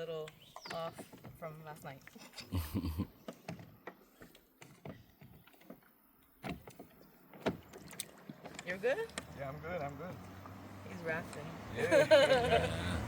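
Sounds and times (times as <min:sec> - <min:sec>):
bamboo raft knocks and creaks: 0:00.2 - 0:10.6.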